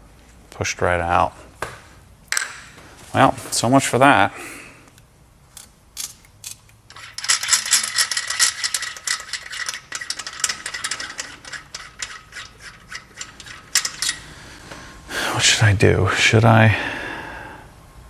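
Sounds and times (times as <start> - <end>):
small metal parts rattling: 5.6 - 14.6.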